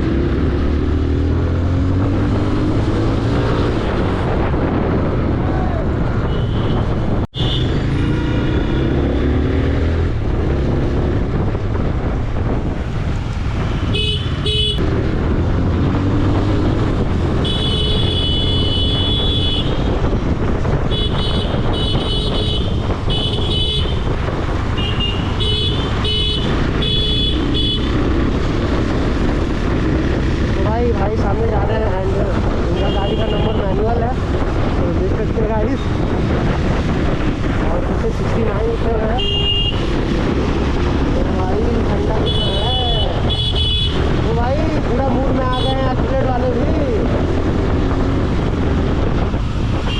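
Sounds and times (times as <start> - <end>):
motorcycle engine: 0.0 - 49.9
wind rumble: 0.0 - 49.9
vehicle horn honking: 6.2 - 8.9, 13.8 - 14.8, 17.4 - 19.8, 20.9 - 24.0, 24.8 - 27.9, 39.2 - 39.8, 42.2 - 44.0.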